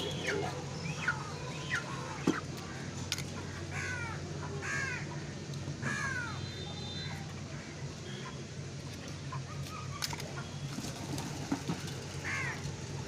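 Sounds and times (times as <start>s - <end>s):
crow cawing: 3.7s - 5.1s, 5.8s - 6.4s, 12.2s - 12.6s.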